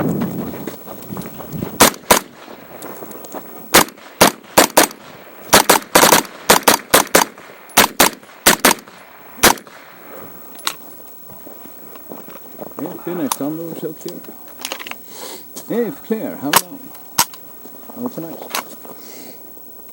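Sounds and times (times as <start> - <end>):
gunshots in quick pairs: 1.8 - 2.4, 3.7 - 10.0.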